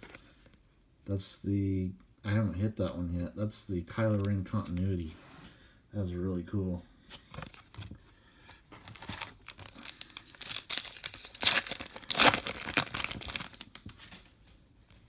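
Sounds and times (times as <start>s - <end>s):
wrapper tearing and crinkling: 8.8s - 14.3s.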